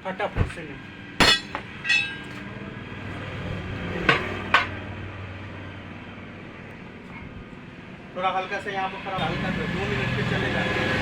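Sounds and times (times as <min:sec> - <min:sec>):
steel tools clanking on wheel rim: 0:01.2 - 0:02.5, 0:04.0 - 0:04.8.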